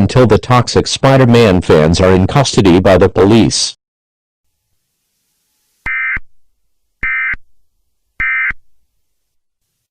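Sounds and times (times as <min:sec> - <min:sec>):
short digital data bursts: 0:05.8 - 0:06.3, 0:07.0 - 0:07.4, 0:08.2 - 0:08.6.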